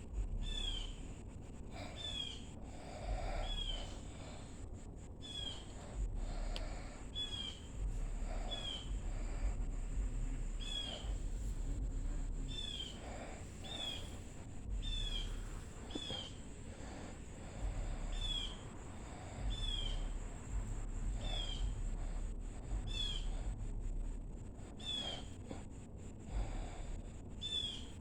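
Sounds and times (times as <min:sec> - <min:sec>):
bird chirping: 0:00.4 - 0:01.2, 0:01.8 - 0:04.2, 0:05.2 - 0:06.0, 0:07.1 - 0:16.5, 0:17.6 - 0:18.7, 0:19.4 - 0:20.2, 0:21.1 - 0:21.8, 0:22.7 - 0:23.4, 0:24.8 - 0:25.3, 0:27.4 - 0:28.0.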